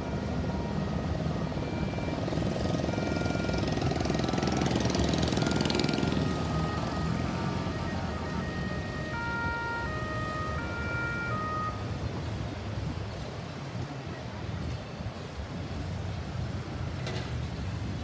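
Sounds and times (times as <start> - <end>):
emergency vehicle siren: 0.0 - 12.4
heavy traffic rumble: 0.0 - 18.0.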